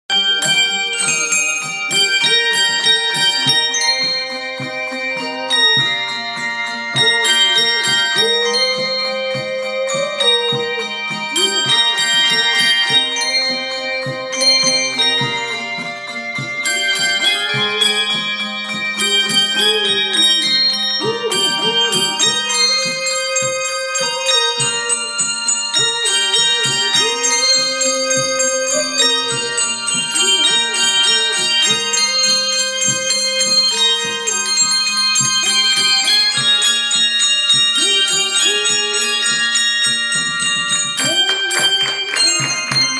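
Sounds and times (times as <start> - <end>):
handbells ringing: 0.0 - 42.9
low wavering melody: 0.1 - 37.2.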